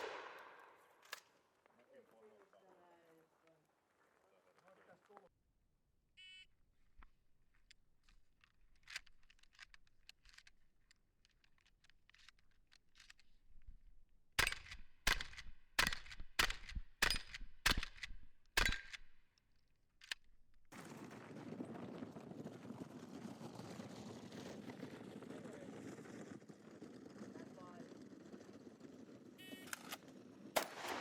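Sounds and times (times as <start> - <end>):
shotgun shots: 0.0 - 0.9, 14.4 - 19.1, 30.6 - 31.0.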